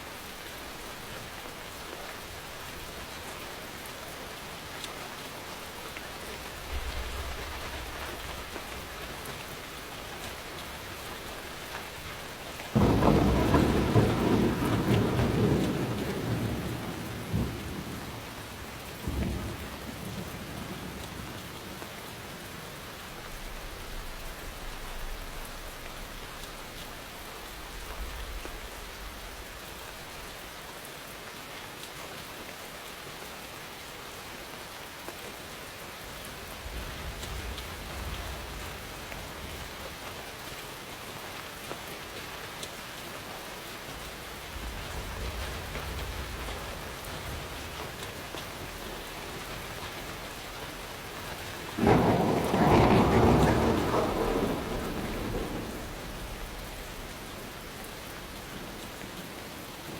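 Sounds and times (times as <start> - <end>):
steady rain: 0.0 - 59.9
thunder rumbling: 6.2 - 21.8, 36.5 - 40.0, 44.0 - 59.9
thunder clap: 6.6 - 18.3, 36.6 - 39.9, 44.4 - 59.9.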